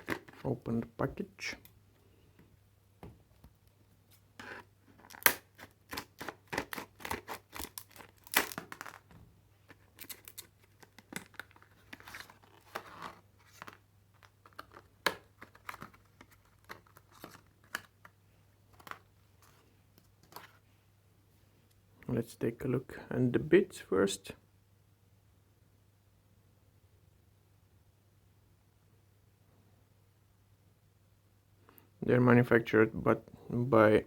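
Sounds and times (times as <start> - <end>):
packaging rustling and tearing: 4.5 - 9.1, 9.7 - 18.1.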